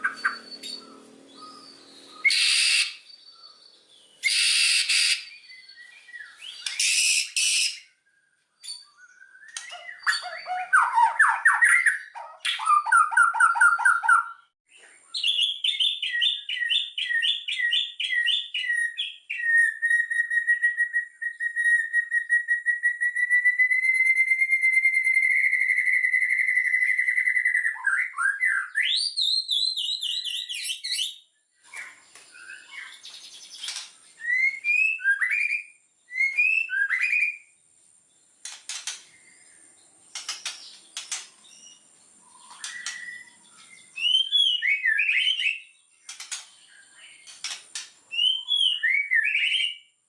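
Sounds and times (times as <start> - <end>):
bird singing: 0.0 - 50.0
sharp bird clicks: 6.5 - 7.8, 9.4 - 14.3, 31.7 - 34.0, 38.4 - 39.5, 40.1 - 43.4, 45.0 - 48.3.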